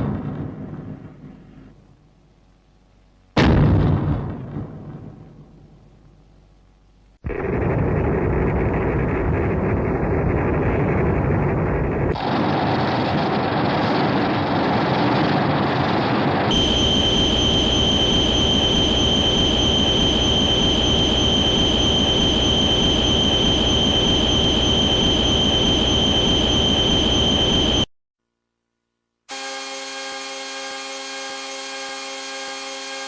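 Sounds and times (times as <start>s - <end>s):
rough rumbling noise: 3.4s - 26.4s
high-pitched whine: 7.3s - 27.9s, 29.3s - 33.0s.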